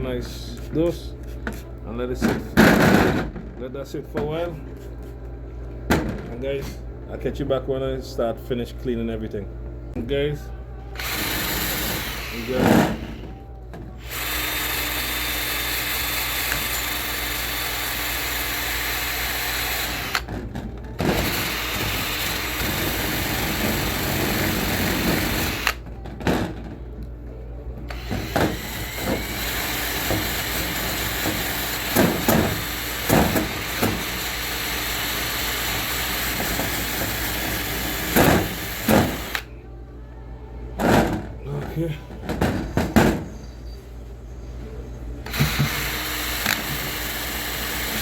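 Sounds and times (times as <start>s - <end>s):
power tool running: 11.0s - 20.3s, 20.9s - 25.8s, 27.9s - 39.5s, 45.2s - 48.0s.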